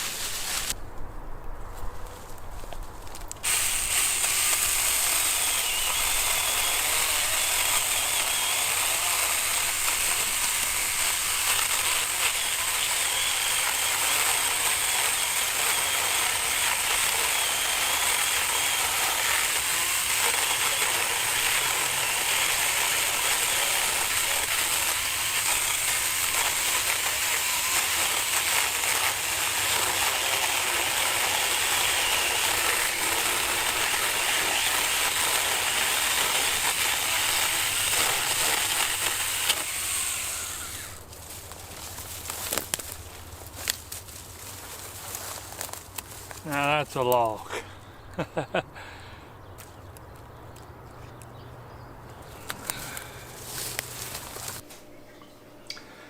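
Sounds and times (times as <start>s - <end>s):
electric chainsaw cutting log: 0.0s - 0.8s, 3.4s - 41.1s, 52.5s - 54.6s.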